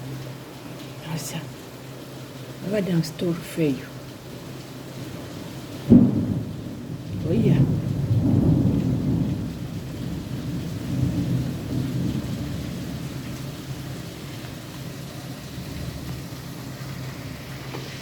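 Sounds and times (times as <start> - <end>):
heavy rain: 0.0 - 18.0
thunder rumbling: 5.8 - 18.0.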